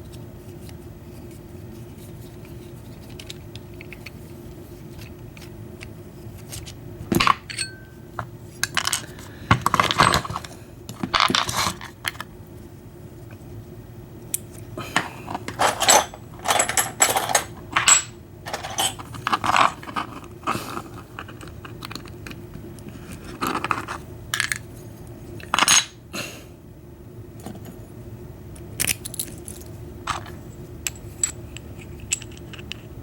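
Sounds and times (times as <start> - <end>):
small metal lock parts clinking: 7.2 - 7.9, 15.4 - 20.2, 28.8 - 32.8.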